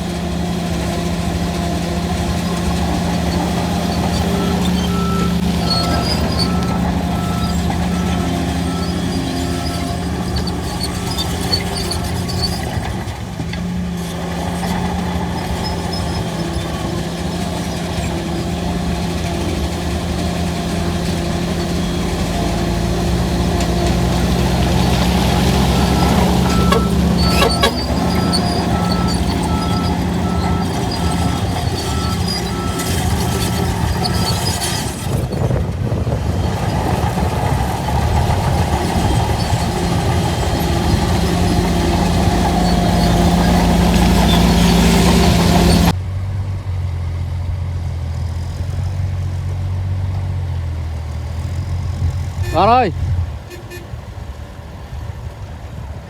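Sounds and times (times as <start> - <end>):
heavy machine diesel engine: 0.0 - 56.0
reversing alarm beeping: 3.6 - 11.8, 25.6 - 34.5.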